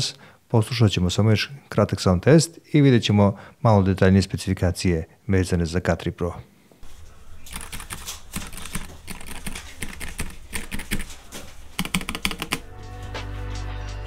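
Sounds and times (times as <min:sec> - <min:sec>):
mechanical keyboard typing: 0:07.5 - 0:12.6
background music: 0:12.3 - 0:14.0.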